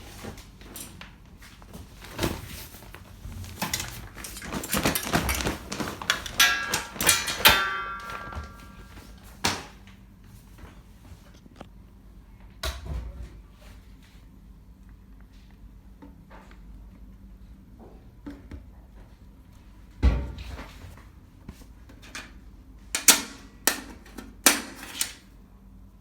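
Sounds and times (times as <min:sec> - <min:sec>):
knocks and thumps on washing machine: 0:02.0 - 0:09.8, 0:20.0 - 0:20.8.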